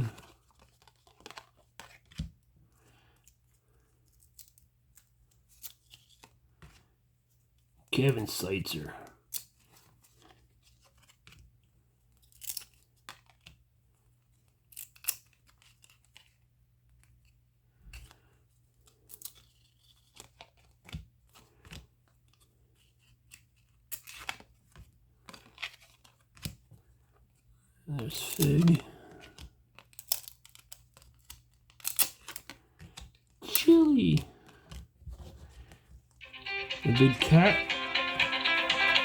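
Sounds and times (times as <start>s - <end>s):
trading cards rustling and sliding: 0.0s - 2.2s, 19.2s - 26.6s, 28.0s - 39.0s.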